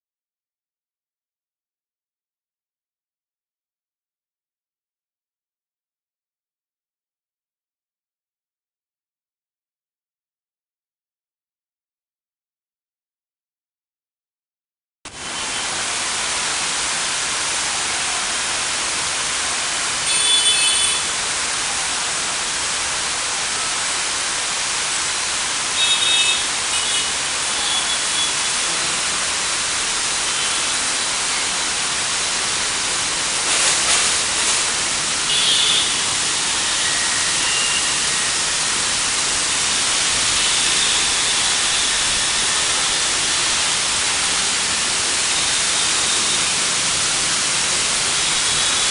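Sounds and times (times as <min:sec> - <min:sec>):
heavy rain hissing: 0:15.1 - 0:48.9
vehicle horn honks: 0:20.1 - 0:21.1, 0:25.8 - 0:29.0, 0:35.3 - 0:36.1, 0:36.8 - 0:38.0.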